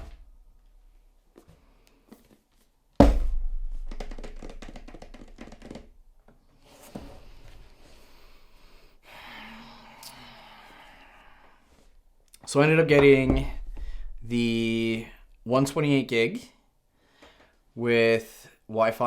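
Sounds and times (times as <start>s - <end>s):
soft thud: 3.0s - 5.4s, 12.9s - 15.4s.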